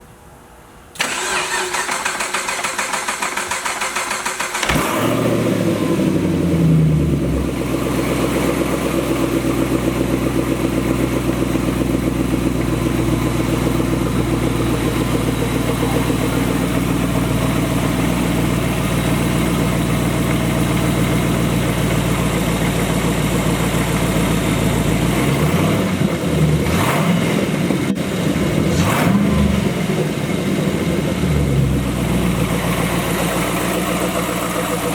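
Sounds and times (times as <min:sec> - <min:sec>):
engine starter cranking: 0:01.0 - 0:05.1
engine revving: 0:01.0 - 0:21.9, 0:23.2 - 0:34.9
car engine idling: 0:01.0 - 0:34.9.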